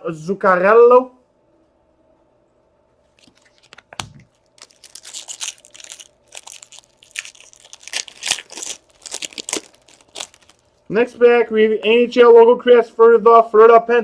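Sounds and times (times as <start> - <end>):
foil wrapper tearing and crinkling: 3.2 - 10.8.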